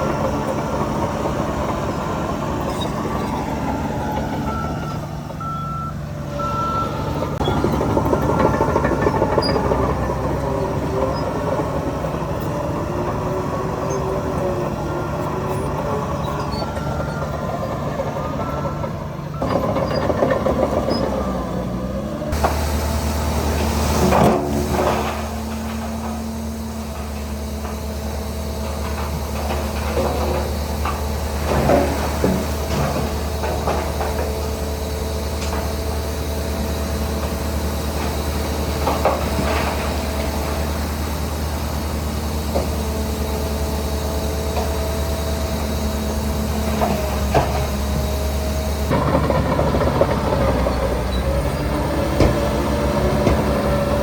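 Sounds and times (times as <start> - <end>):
metallic clanks and squeaks: 0.0 - 21.5
heavy diesel engine drone: 0.0 - 54.0.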